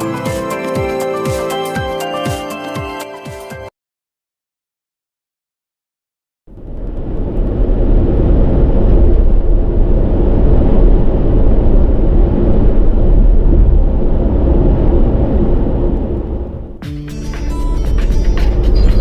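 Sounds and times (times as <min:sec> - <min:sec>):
loud low rumble: 0:06.5 - 0:19.0.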